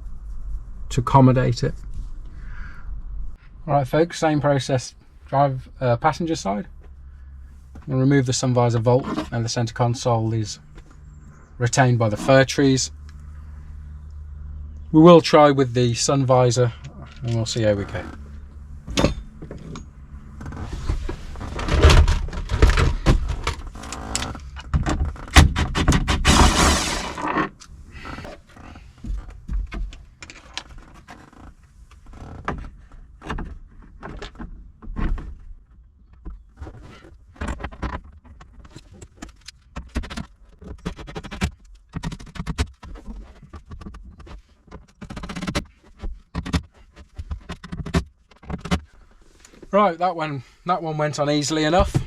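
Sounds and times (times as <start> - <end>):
plastic scraping and rustling: 19.4 - 49.8.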